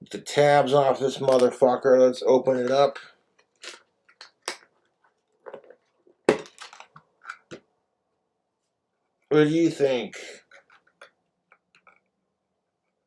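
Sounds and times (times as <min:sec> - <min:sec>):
packaging crackling and snapping: 0:03.4 - 0:04.8.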